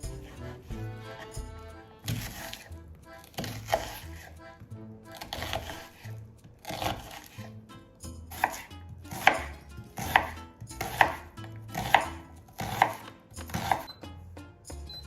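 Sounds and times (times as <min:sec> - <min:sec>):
low tone shifting in steps: 0:00.0 - 0:02.0.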